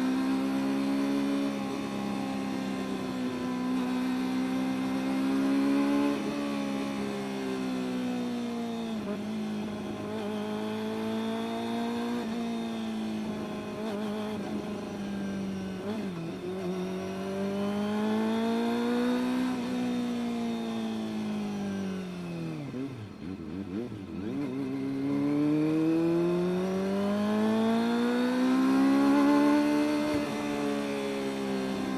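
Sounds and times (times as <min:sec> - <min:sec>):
motorcycle engine revving: 0:15.6 - 0:31.9.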